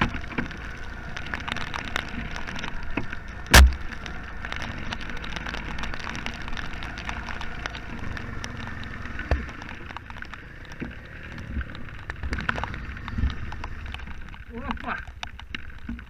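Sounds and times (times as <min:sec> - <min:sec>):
atv engine running low: 0:00.0 - 0:16.0
rain pattering: 0:00.0 - 0:16.0
thump: 0:03.5 - 0:03.8.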